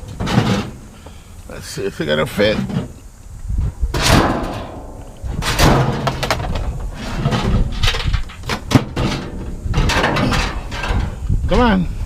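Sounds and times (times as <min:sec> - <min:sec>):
scrap metal clanking: 0:00.0 - 0:01.1, 0:02.3 - 0:03.0, 0:03.9 - 0:11.2.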